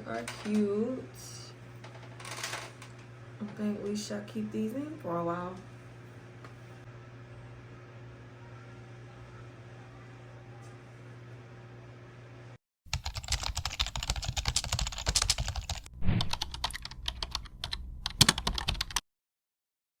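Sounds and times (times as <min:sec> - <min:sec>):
rapid clicking and tapping: 0:12.9 - 0:19.0.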